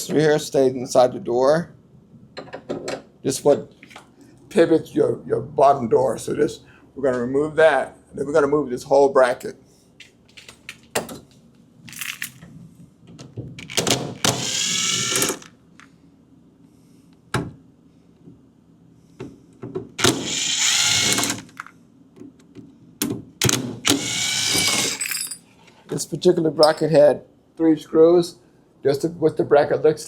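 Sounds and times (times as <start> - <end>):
power drill spinning: 13.6 - 15.5, 20.0 - 21.6, 23.8 - 25.1
tool and screws clicking: 13.6 - 15.5, 20.0 - 21.7, 23.4 - 25.2.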